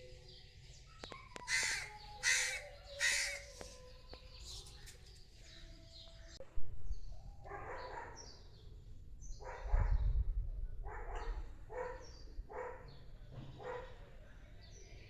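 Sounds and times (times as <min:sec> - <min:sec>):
birds chirping: 0:00.3 - 0:06.4
animal calling: 0:01.4 - 0:04.8.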